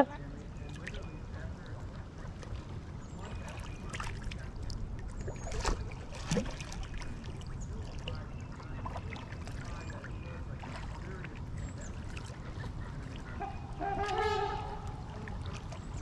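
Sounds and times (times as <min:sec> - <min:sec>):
water splashing and trickling: 0:00.0 - 0:16.0
faint bird calls: 0:11.6 - 0:16.0.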